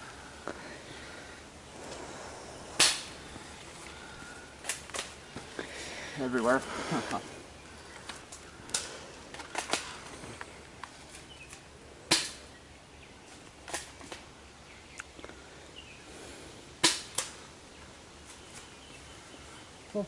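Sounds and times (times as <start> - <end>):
airsoft gun shots: 2.8 - 3.2, 12.1 - 12.4, 16.8 - 17.3.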